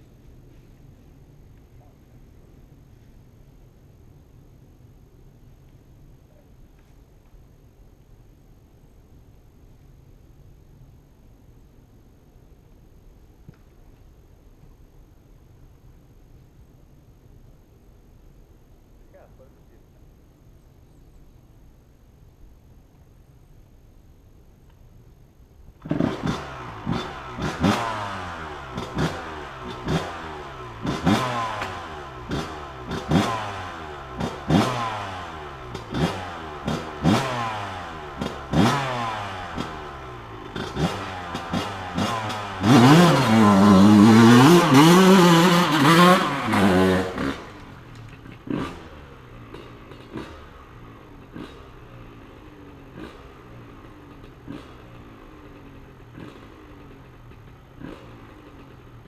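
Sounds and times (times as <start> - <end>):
two-stroke engine revving: 25.8 - 59.0.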